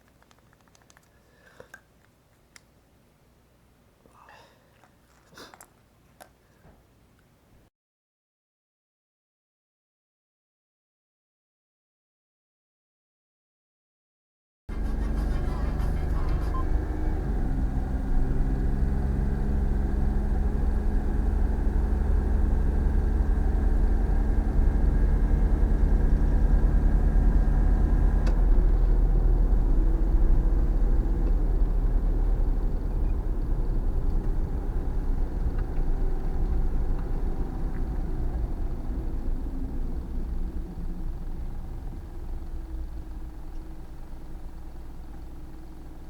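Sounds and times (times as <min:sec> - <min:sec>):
low road rumble: 0:14.7 - 0:46.0
van engine running: 0:14.7 - 0:46.0.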